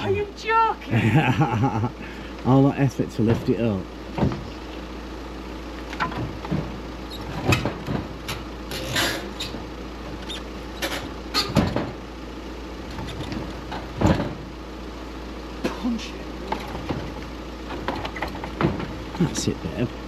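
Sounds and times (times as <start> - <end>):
engine idling: 0.0 - 20.0
scrap metal knocking and clattering: 6.0 - 12.0, 16.5 - 19.3.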